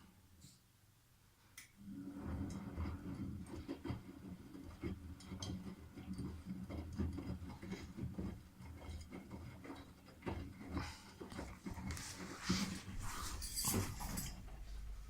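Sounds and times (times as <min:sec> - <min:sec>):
washing machine rumbling: 0:02.0 - 0:15.0.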